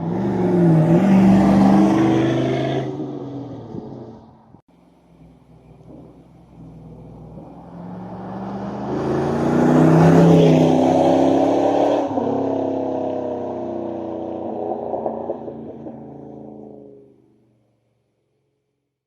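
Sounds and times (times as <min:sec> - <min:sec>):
motor vehicle passing by: 0:05.4 - 0:13.0.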